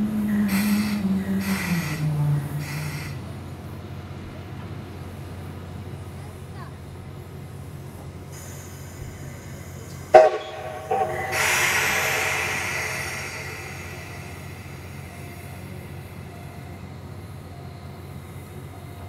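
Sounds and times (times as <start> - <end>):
loud rushing steam hiss: 8.2 - 17.4
steam locomotive whistle: 10.1 - 16.0
steady low rumble: 10.3 - 17.4.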